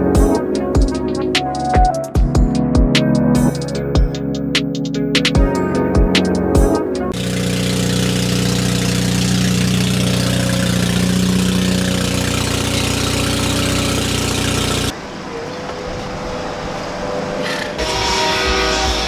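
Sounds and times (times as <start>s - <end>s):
car engine idling: 5.2s - 15.5s.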